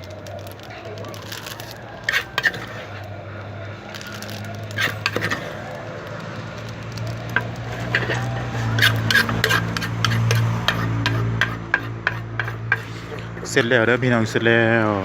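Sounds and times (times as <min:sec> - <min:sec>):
pestle knocking in a mortar: 0:04.8 - 0:05.6, 0:07.4 - 0:13.7.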